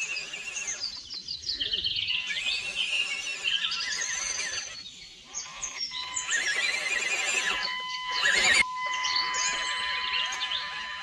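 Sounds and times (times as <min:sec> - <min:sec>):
birds chirping and warbling: 0:00.0 - 0:11.0.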